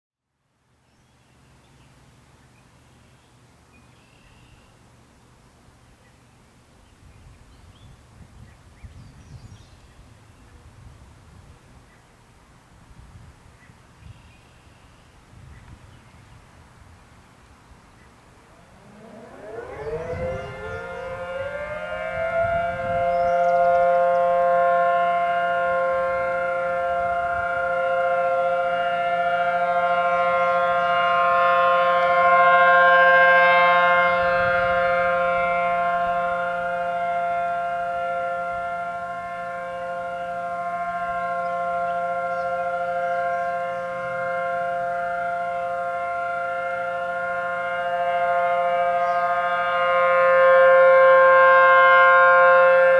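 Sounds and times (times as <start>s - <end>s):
civil defense siren: 18.3s - 52.9s.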